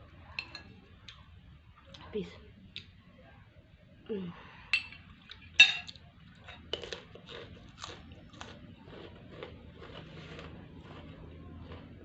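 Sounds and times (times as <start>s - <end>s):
cutlery clinking on a plate: 4.8s - 6.9s
chewing: 5.0s - 12.0s.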